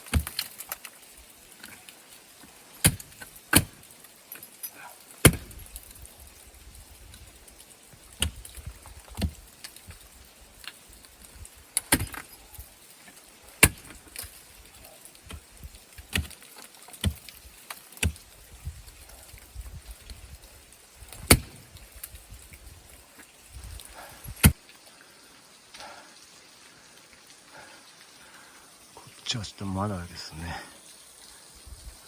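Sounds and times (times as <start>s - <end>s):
sharp clicks and knocks: 15.2s - 18.3s.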